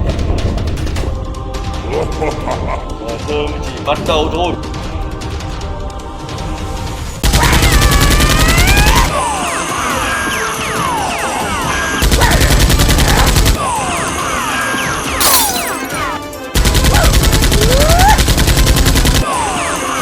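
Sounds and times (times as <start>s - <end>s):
background music: 0.0s - 20.0s
machine-gun fire: 16.6s - 19.2s.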